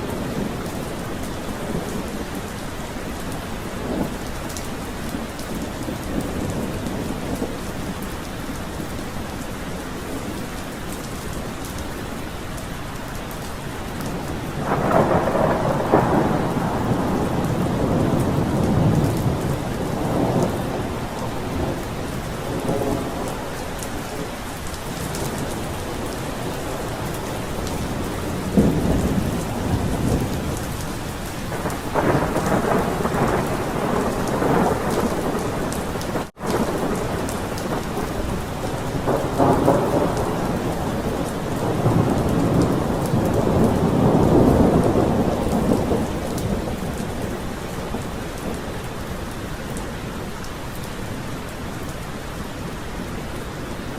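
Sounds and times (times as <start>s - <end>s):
steady rain: 0.0s - 53.9s
rolling thunder: 14.2s - 49.1s.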